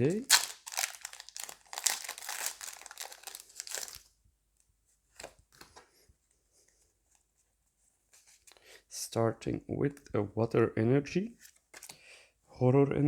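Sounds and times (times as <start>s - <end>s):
foil wrapper tearing and crinkling: 0.0s - 4.1s.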